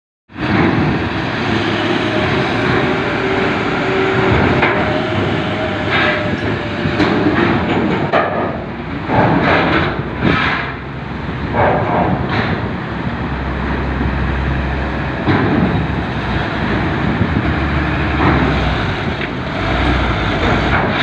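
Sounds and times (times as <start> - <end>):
truck rolling: 0.3 - 21.0.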